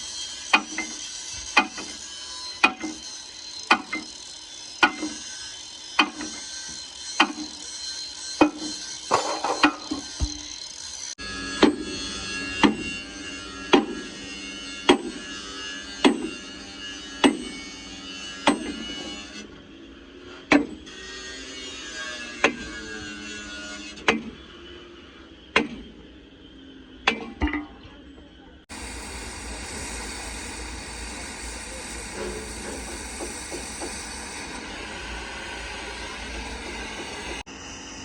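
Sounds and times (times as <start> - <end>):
hammer striking metal: 8.4 - 10.5
steady hiss: 28.7 - 37.4.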